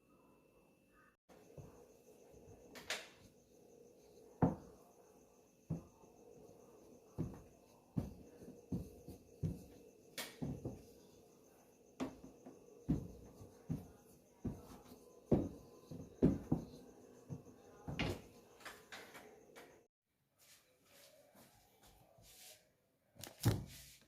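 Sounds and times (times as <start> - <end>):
soft knocks on work surface: 4.4 - 4.8, 7.2 - 9.8, 10.4 - 10.9, 12.0 - 18.3.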